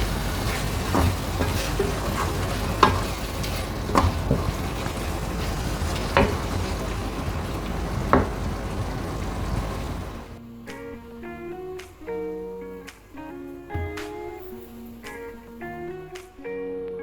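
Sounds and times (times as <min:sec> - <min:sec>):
meat sizzling in a frying pan: 0:00.0 - 0:10.2
utensil knocking against pan: 0:00.0 - 0:10.2.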